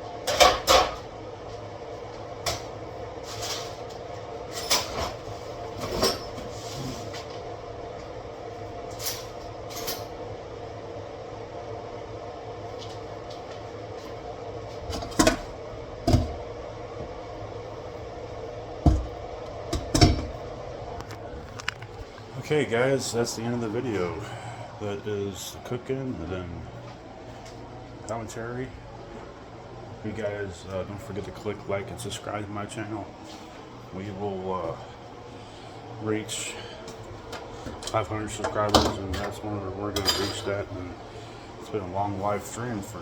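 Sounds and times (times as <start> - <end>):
steady background hum: 0.0 - 43.0
kitchen utensils clattering: 4.5 - 5.2, 5.8 - 6.5, 40.0 - 40.6.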